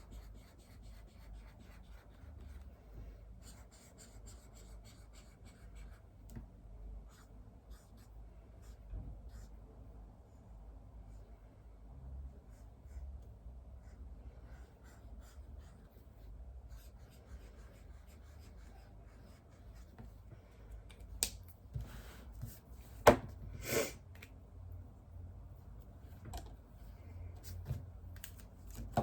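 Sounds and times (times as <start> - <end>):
ticks and scratches of writing: 0.0 - 2.7, 3.4 - 9.6, 12.5 - 20.2.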